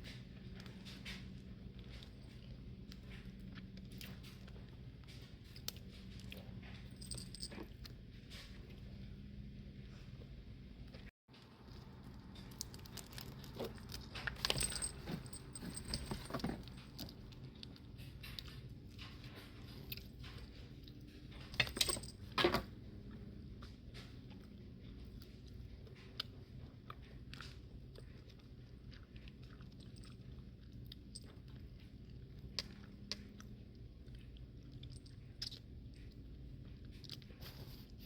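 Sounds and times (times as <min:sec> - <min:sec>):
chewing: 0:11.6 - 0:14.6, 0:16.7 - 0:21.3, 0:22.9 - 0:37.4.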